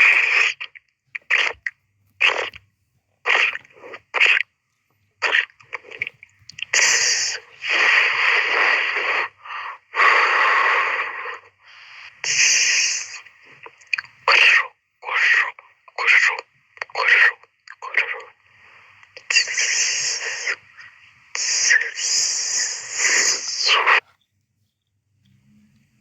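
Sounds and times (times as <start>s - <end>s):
person making hissing vocal noises: 5.2s - 13.7s, 19.2s - 24.0s.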